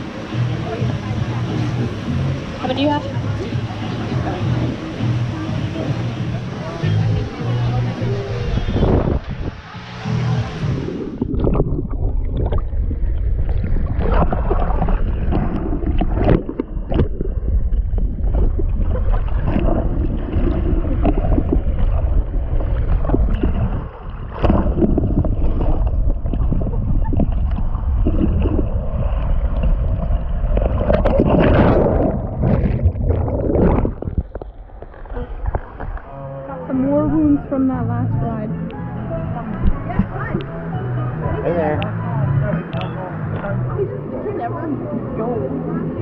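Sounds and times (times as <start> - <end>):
rushing water and splashing: 0.0 - 38.7
wind buffeting microphone: 8.0 - 9.7, 10.5 - 36.1.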